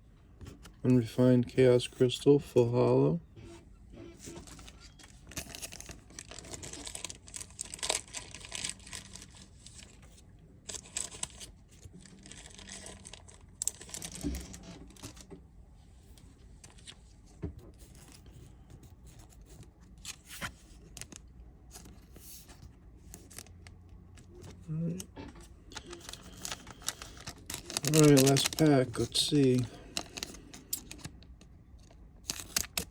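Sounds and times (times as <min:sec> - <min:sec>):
plastic wrapper crinkling and tearing: 0:04.5 - 0:15.3, 0:20.0 - 0:25.1, 0:25.7 - 0:32.9
cards being handled: 0:24.2 - 0:32.9.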